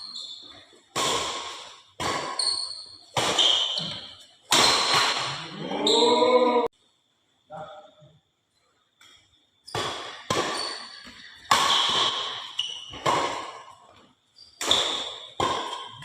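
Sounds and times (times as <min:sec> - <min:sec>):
rackets hitting shuttlecock: 0:00.0 - 0:05.4, 0:09.0 - 0:16.0.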